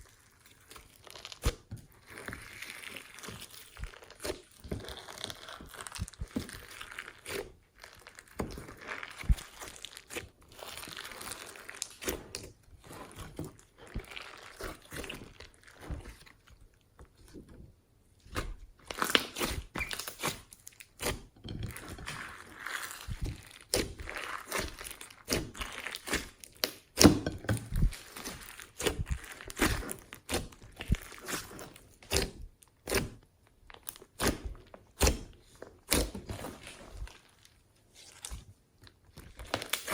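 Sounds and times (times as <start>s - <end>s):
slime squished by hand: 0.3s - 16.5s, 18.3s - 33.2s.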